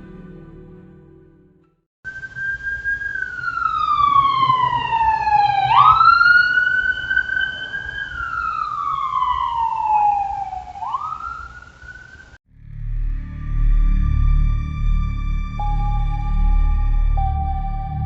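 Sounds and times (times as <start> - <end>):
siren wailing: 2.1 - 18.0
faint low rumble: 12.5 - 18.0.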